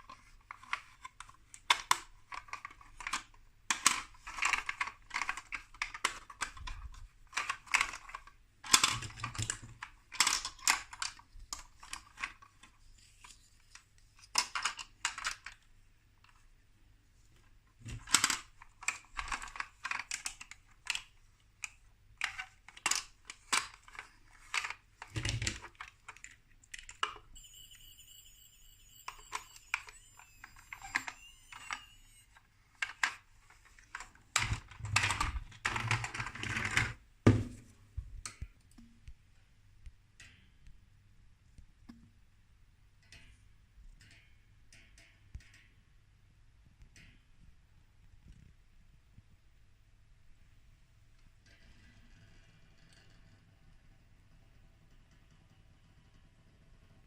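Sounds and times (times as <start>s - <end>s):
plastic blocks clicking and rattling: 0.0s - 16.4s, 17.4s - 27.4s, 28.4s - 37.0s
high electronic tone with warble: 27.4s - 32.4s.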